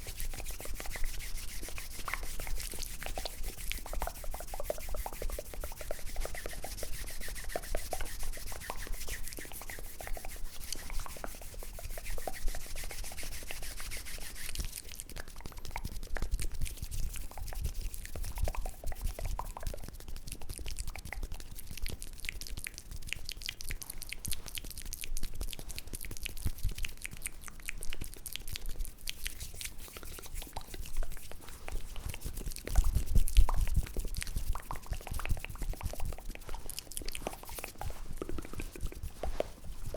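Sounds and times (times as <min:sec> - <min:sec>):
soft high hiss: 0:00.0 - 0:15.8, 0:28.6 - 0:39.9
quick small wet clicks and taps: 0:14.5 - 0:39.9.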